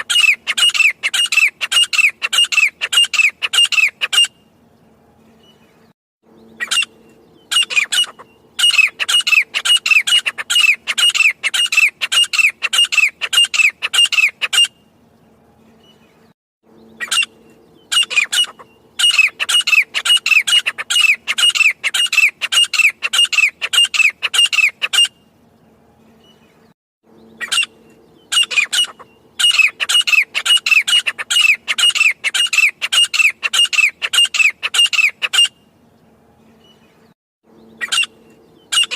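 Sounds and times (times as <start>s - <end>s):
francolin calling: 0.0s - 4.3s, 6.3s - 14.8s, 16.7s - 25.2s, 27.1s - 35.6s, 37.5s - 38.9s.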